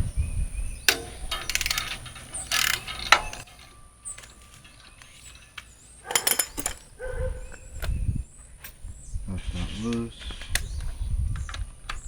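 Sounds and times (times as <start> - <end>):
socket ratchet clicking: 0.9 - 4.4.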